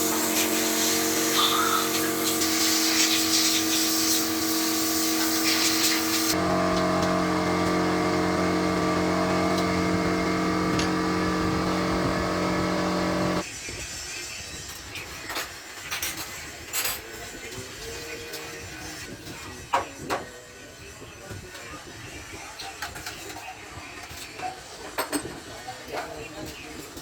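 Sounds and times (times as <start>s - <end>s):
loud hiss: 0.0s - 13.4s
workshop machine humming: 0.0s - 13.4s.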